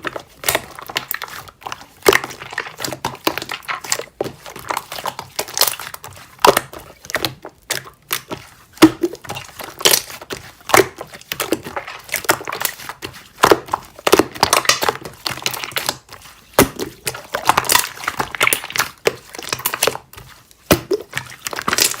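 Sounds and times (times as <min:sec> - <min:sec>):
slime squishing and crackling: 0:00.0 - 0:22.0
slime popping: 0:13.4 - 0:20.1, 0:20.7 - 0:22.0.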